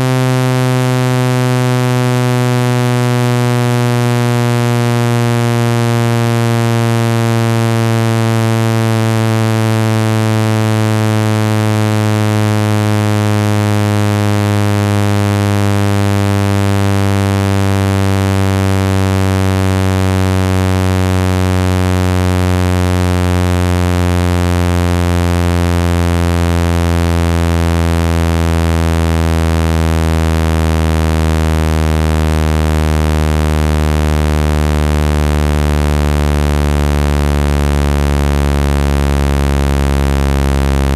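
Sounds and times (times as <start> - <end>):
low synthesized buzzing tone: 0.0 - 40.9.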